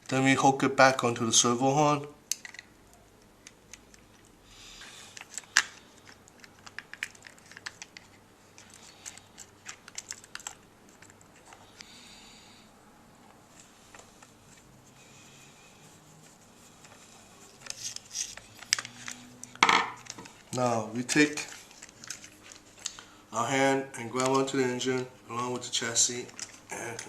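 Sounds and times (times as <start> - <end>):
small plastic parts clicking: 2.3 - 11.9.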